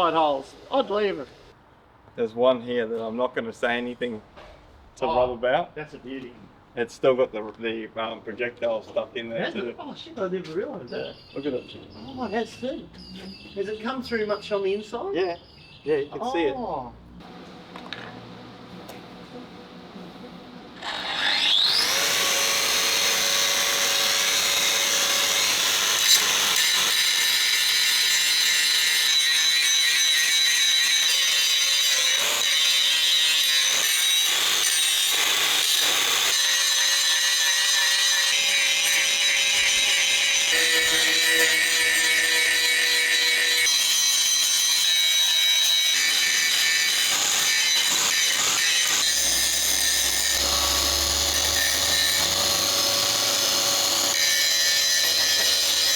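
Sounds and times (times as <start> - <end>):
angle grinder grinding steel: 20.5 - 55.9.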